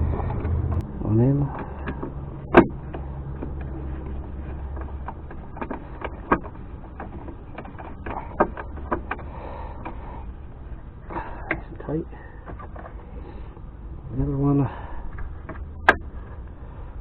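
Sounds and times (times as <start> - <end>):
low steady rumble: 0.0 - 17.0
hand tool tightening a bolt: 1.5 - 10.0.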